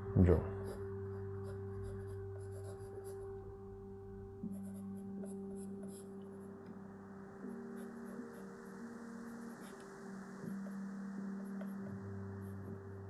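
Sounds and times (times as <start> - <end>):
soft background music: 0.0 - 13.0
pencil scratching on paper: 0.6 - 3.2, 4.4 - 6.1.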